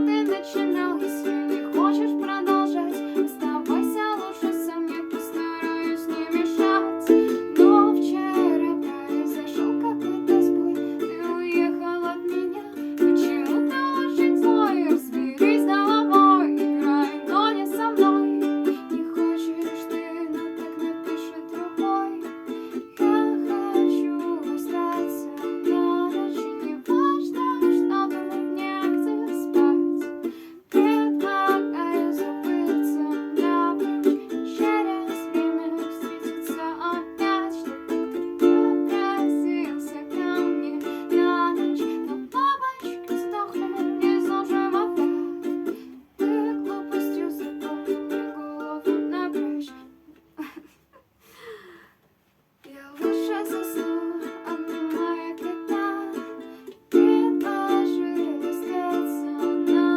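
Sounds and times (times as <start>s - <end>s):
plucked string cover song: 0.0s - 50.7s, 52.6s - 59.9s.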